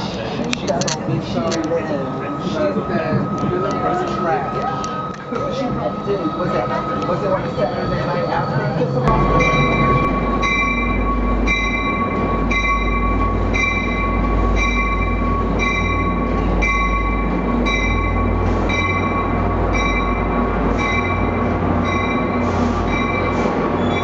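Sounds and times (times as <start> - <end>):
diesel locomotive drone: 0.0 - 24.0
high ringing sound: 7.7 - 24.0
high whine: 9.0 - 23.4.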